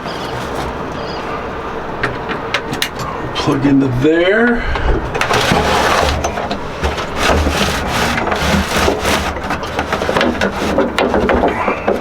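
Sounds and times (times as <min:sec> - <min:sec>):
small knocks: 0:00.0 - 0:03.7, 0:04.6 - 0:12.0
scraping against wood: 0:00.0 - 0:12.0.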